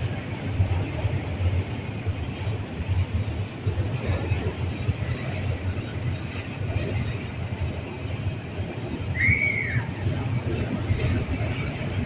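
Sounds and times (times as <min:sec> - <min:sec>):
train rumbling: 0:00.0 - 0:12.0
high squeal: 0:09.1 - 0:09.9.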